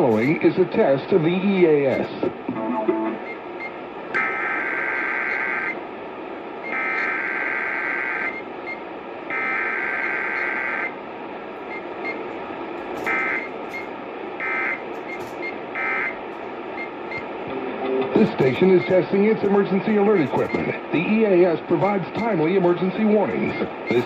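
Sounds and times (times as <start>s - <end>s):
radio static: 0.0s - 3.3s, 4.1s - 5.8s, 6.6s - 8.5s, 9.3s - 11.0s, 11.7s - 24.0s
alert data tone bursts: 6.6s - 10.9s, 13.0s - 16.2s, 18.3s - 19.2s, 23.5s - 24.0s.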